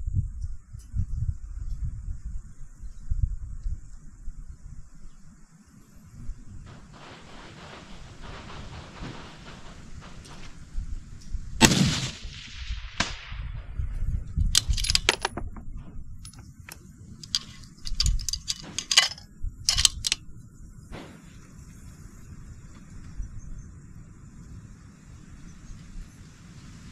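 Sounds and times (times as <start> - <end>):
rifle shot with echo: 6.7 - 15.2, 20.9 - 21.5
quieter crack: 6.7 - 20.2
sharp metallic clicks: 14.4 - 20.2.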